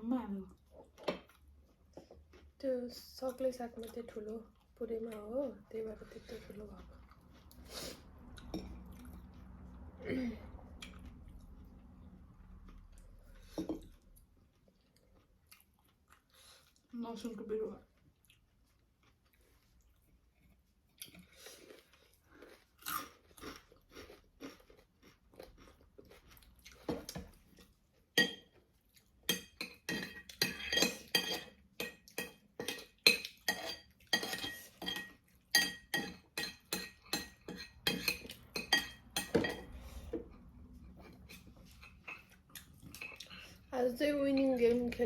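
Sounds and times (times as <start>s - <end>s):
chewing crispy fried food: 6.6s - 9.9s, 10.7s - 17.0s, 17.8s - 29.3s
utensils clinking on dishes: 28.2s - 28.5s, 29.3s - 39.8s.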